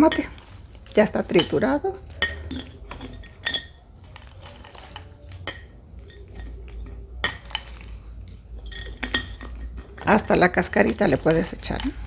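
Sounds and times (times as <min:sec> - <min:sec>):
crushed fruit pieces clicking in jar: 0:00.0 - 0:12.0
light scraping and rustling: 0:00.0 - 0:12.0.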